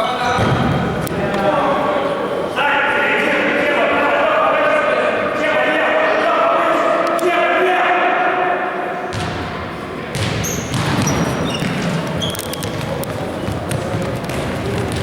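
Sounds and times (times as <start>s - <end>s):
crowd and player voices: 0.0s - 15.0s
ball knocking on feet and floor: 10.1s - 15.0s
shoes squeaking on court: 10.1s - 15.0s.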